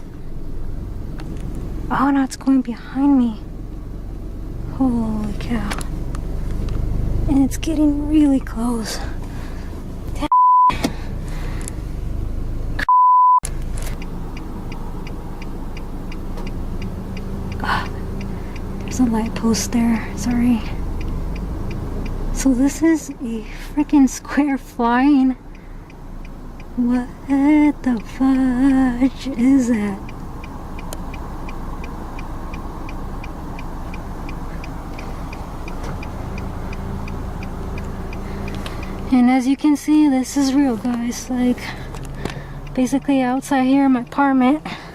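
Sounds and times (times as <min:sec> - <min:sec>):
censor bleep: 0:10.2 - 0:10.8, 0:12.8 - 0:13.4
faint rapid ticking: 0:13.5 - 0:44.9.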